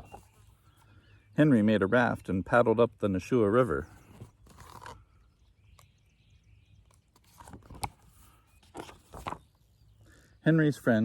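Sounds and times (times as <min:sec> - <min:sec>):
paper page turning: 0:04.0 - 0:05.0, 0:06.9 - 0:09.5.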